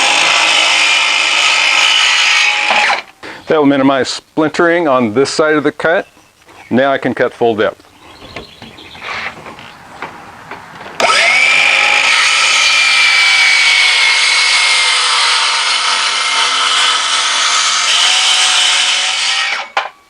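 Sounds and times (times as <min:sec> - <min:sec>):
circular saw cutting plywood: 0:00.0 - 0:03.1, 0:11.0 - 0:19.9.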